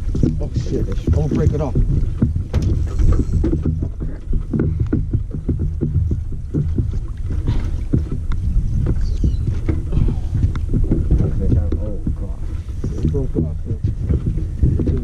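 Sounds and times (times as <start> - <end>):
steady low rumble: 0.0 - 15.0
water slapping against boat hull: 0.0 - 15.0.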